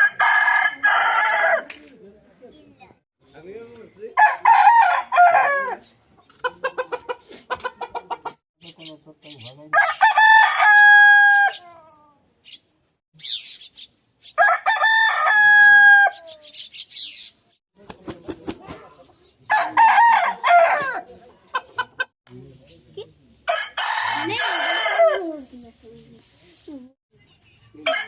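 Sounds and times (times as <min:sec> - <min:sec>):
rooster crowing: 0:00.0 - 0:01.7, 0:04.2 - 0:05.8, 0:09.7 - 0:11.6, 0:14.4 - 0:16.2, 0:19.5 - 0:21.1, 0:23.5 - 0:25.2
chicken clucking: 0:06.1 - 0:08.4, 0:21.1 - 0:22.1.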